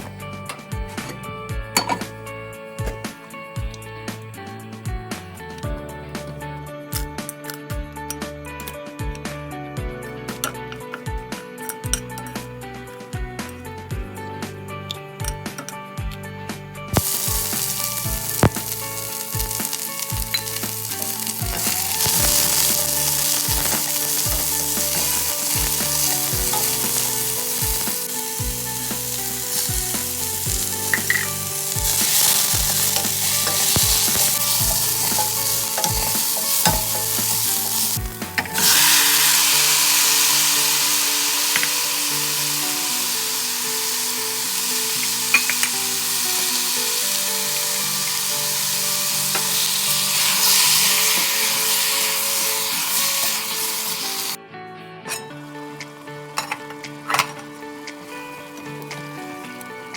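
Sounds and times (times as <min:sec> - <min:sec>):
background music with beat: 0:00.0 - 0:54.4, 0:55.0 - 0:59.9
food sizzling in oil: 0:17.0 - 0:54.4, 0:55.1 - 0:59.9.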